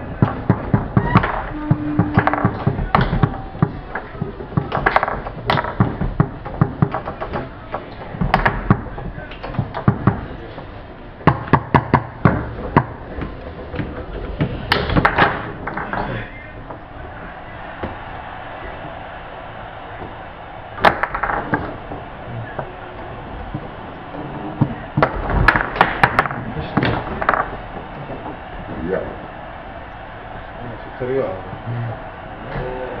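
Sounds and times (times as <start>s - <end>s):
foosball clacks: 0.0s - 16.9s, 20.8s - 28.8s.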